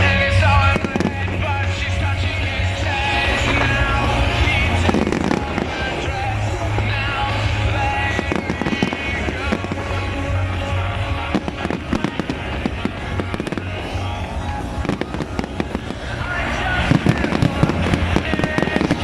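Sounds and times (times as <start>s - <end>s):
fireworks banging and crackling: 0.0s - 19.0s
loud music: 0.0s - 19.0s
firework rising whistle: 11.3s - 16.2s.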